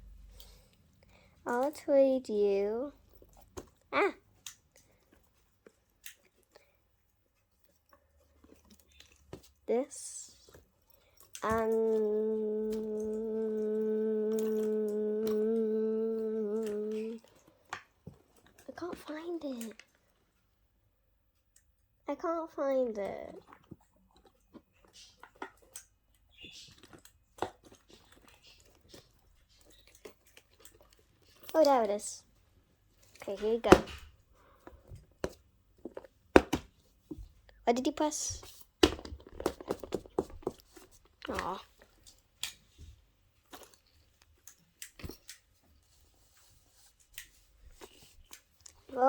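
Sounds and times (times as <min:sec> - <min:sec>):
fidget toys clicking and rustling: 0:00.3 - 0:20.3, 0:21.3 - 0:49.0
fidget toys clicking: 0:11.2 - 0:17.4.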